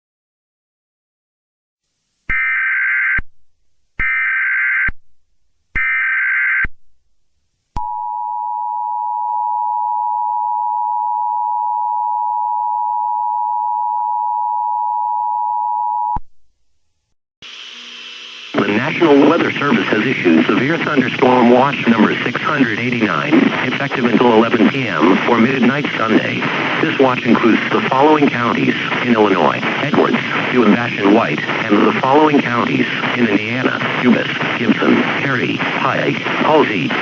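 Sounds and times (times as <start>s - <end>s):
buzzy digital data tones: 17.4s - 37.0s.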